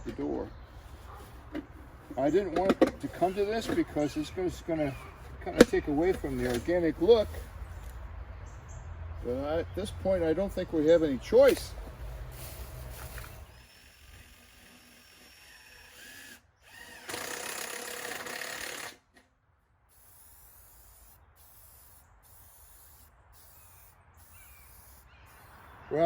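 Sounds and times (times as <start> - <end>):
outdoor background noise: 0.0 - 26.0
power drill running: 12.6 - 19.1.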